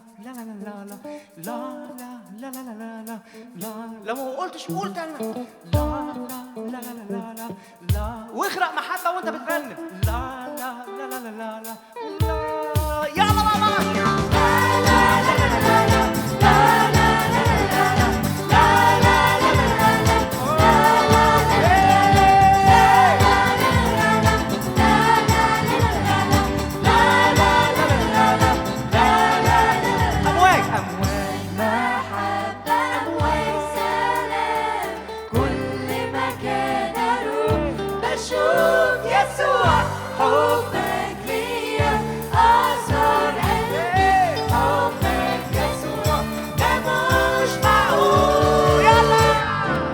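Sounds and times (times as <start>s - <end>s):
band backing with steady beat: 12.2s - 39.0s, 39.6s - 49.9s
children's song singing voices: 12.3s - 49.9s.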